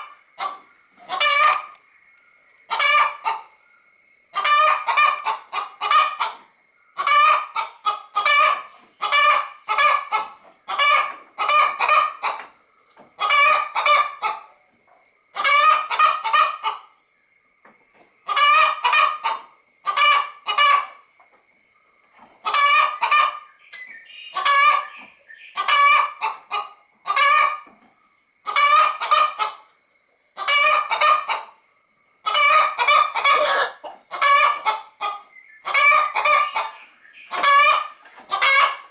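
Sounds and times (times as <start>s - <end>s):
hen clucking: 0.0s - 1.8s, 2.6s - 3.6s, 4.3s - 16.9s, 18.2s - 21.0s, 22.2s - 29.7s, 30.4s - 31.6s, 32.2s - 38.9s.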